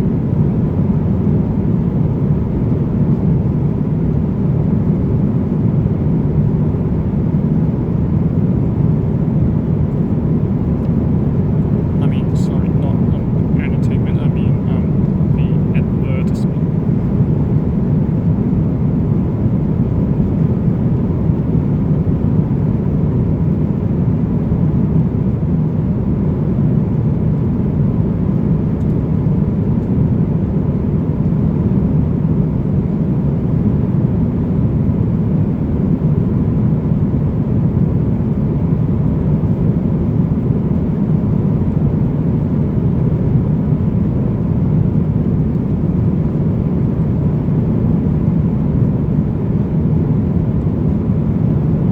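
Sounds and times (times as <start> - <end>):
airplane cabin noise: 0.0 - 25.2.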